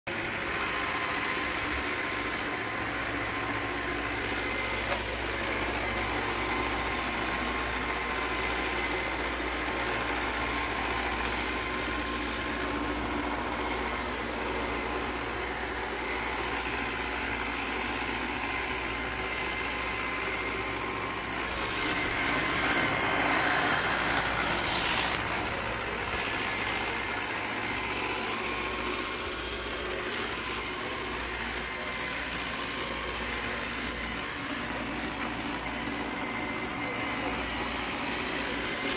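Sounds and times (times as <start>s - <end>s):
robot vacuum whining grinding: 0.1s - 38.9s.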